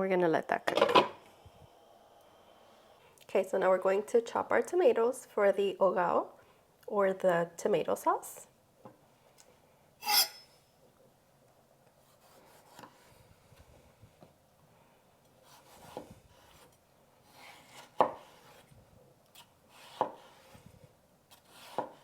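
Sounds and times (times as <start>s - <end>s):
knife slicing tomatoes: 15.4s - 18.7s, 19.3s - 20.7s, 21.3s - 22.0s.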